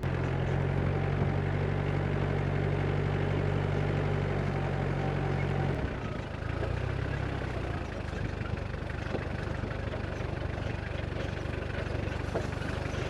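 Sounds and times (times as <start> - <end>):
engine running at low revs: 0.0 - 13.0
small rattles and knocks: 6.1 - 13.0.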